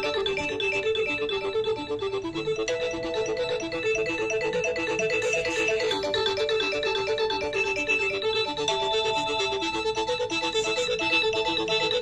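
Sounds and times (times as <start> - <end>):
polyphonic phone ringtone: 2.4 - 12.0.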